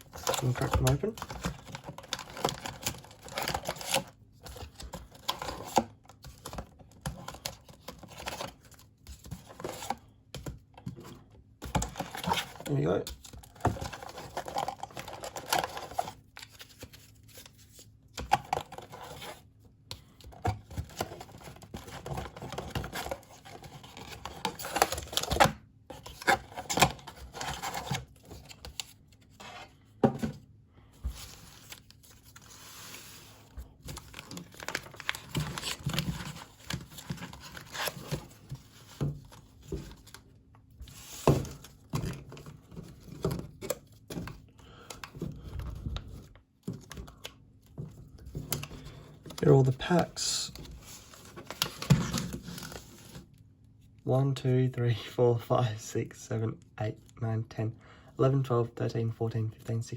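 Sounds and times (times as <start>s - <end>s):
cardboard and packaging tearing: 33.9s - 38.5s.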